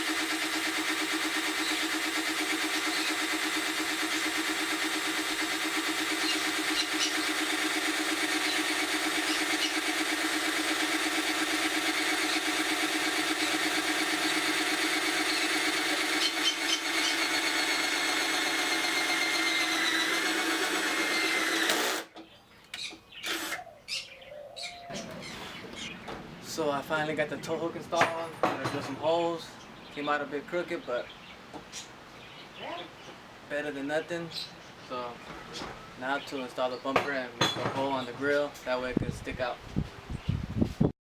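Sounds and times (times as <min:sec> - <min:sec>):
power drill boring through metal: 0:00.0 - 0:22.2, 0:23.2 - 0:23.6.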